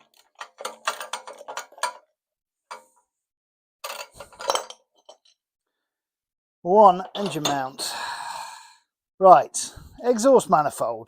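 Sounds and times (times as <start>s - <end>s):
metal tools clinking: 0.0s - 2.1s, 3.8s - 5.4s, 7.0s - 7.7s.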